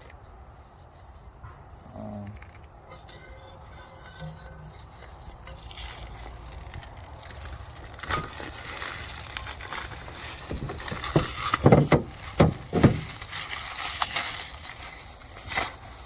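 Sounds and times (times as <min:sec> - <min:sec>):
packing rustling: 0:04.2 - 0:16.0
knocks and clunks: 0:10.0 - 0:13.3.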